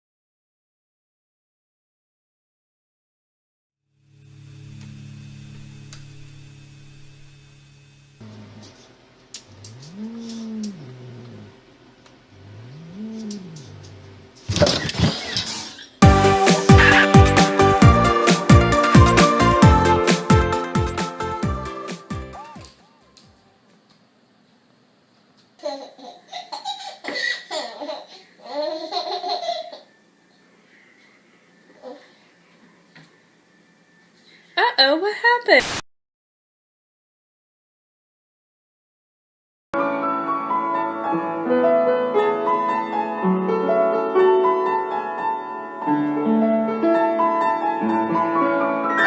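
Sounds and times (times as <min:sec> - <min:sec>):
person laughing: 0:16.6 - 0:17.4
slow piano melody: 0:39.8 - 0:49.0.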